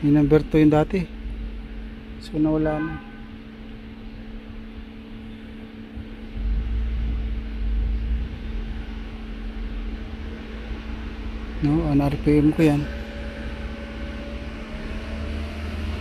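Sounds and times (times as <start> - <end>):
car engine idling: 0.0 - 16.0
low rumble: 0.0 - 16.0.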